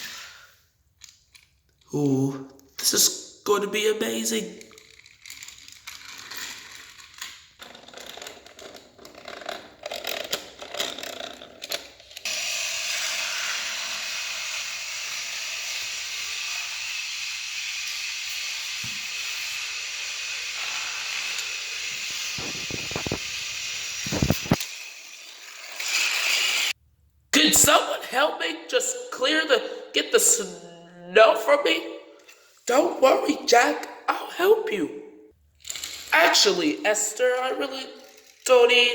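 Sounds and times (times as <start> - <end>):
toy train motor whirring: 4.6 - 26.8, 35.6 - 38.8.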